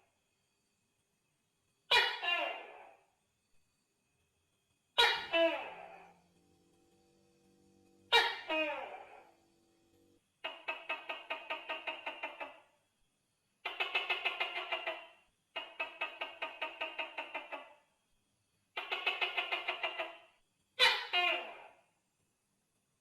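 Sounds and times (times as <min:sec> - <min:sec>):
gecko clucking calls: 0:08.1 - 0:09.3.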